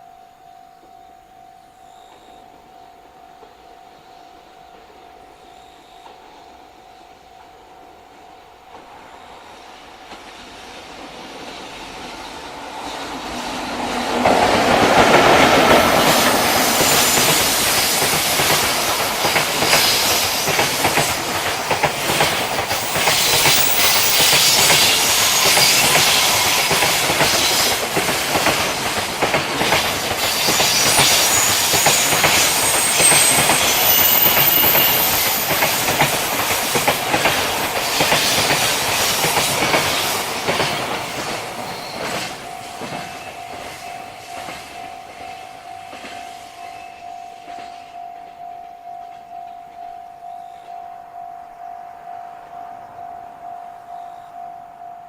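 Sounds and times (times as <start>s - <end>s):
freight train wheels clattering: 9.9s - 47.9s
high-pitched wheel squeals: 15.7s - 18.4s, 21.6s - 27.8s, 30.2s - 36.4s.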